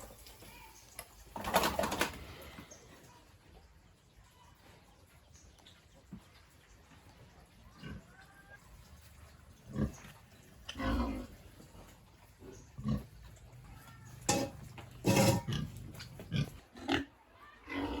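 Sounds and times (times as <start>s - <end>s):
pigs grunting: 9.6s - 13.7s, 14.3s - 18.0s.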